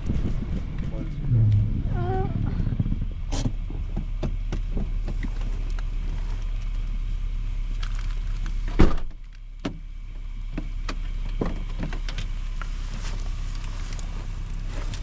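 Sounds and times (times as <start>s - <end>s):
car rumble: 0.0s - 15.0s
loud thump: 1.3s - 4.0s.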